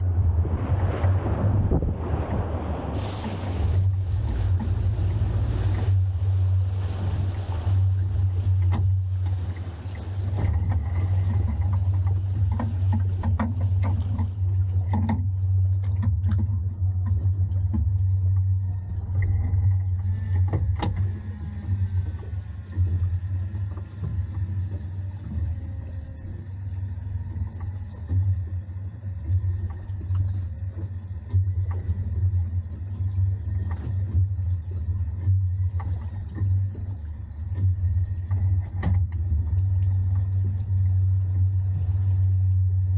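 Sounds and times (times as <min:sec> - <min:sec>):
boat engine low rumble: 0:00.0 - 0:42.9.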